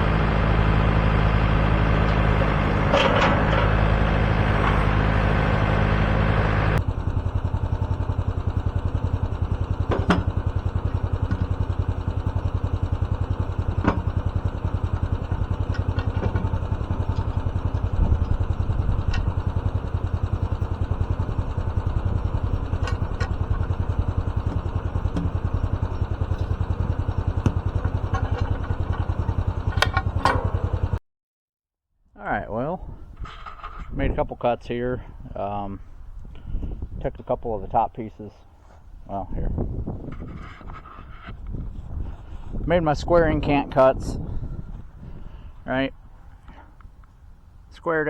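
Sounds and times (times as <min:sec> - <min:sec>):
engine idling: 0:00.0 - 0:31.0, 0:32.7 - 0:48.0
sharp clicks and knocks: 0:09.8 - 0:10.4, 0:13.8 - 0:14.2, 0:15.6 - 0:18.4, 0:22.7 - 0:23.8, 0:24.4 - 0:30.6.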